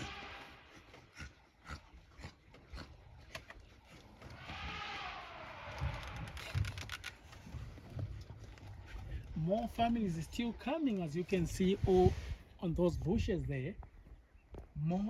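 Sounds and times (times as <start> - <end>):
elephant trumpeting: 0.0 - 1.2, 4.3 - 6.4.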